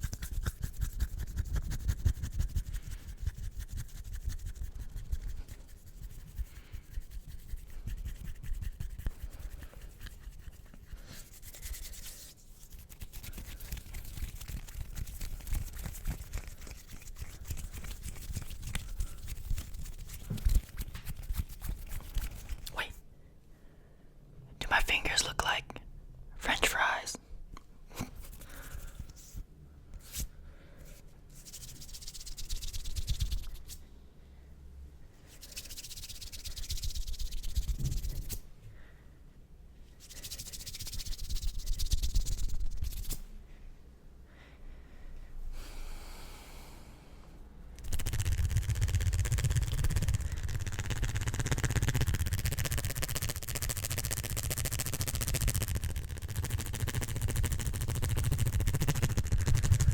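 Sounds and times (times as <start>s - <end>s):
hands rubbing together: 0.0s - 23.0s, 28.0s - 29.4s, 30.0s - 33.8s, 35.3s - 38.4s, 40.0s - 43.2s, 47.8s - 59.9s.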